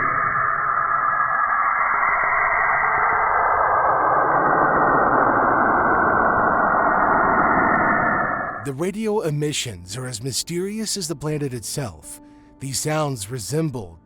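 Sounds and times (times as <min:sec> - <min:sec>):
dense rushing noise: 0:00.0 - 0:08.7.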